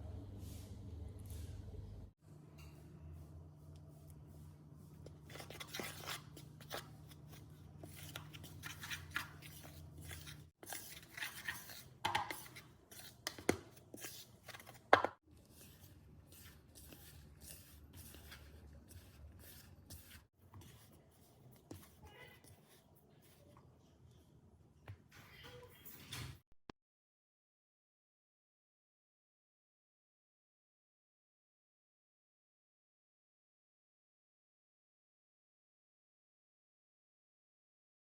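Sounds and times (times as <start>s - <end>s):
utensils tapping and scraping: 4.9s - 23.6s.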